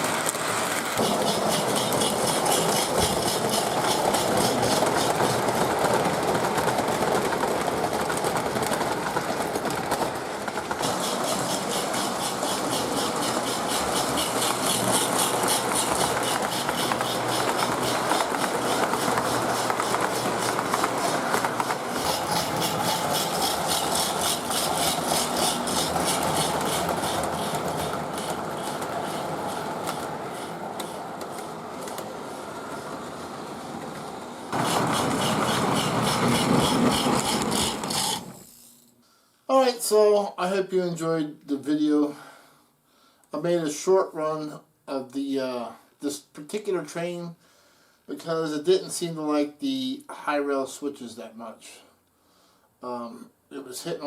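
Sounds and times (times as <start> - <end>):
toy steam chuffing hiss: 0.0 - 7.4, 10.6 - 31.6, 34.5 - 38.9
toy train wheels and motor: 0.0 - 33.0, 33.7 - 38.9.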